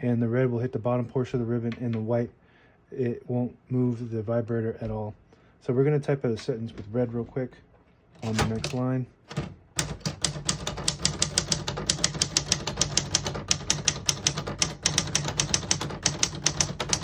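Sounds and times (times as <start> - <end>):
manual typewriter typing: 8.2 - 17.0.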